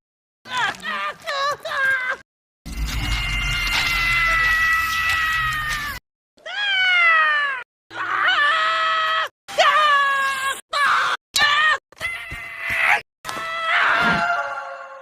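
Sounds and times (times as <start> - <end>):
high-pitched cartoon screams: 2.8 - 9.3, 9.9 - 15.0.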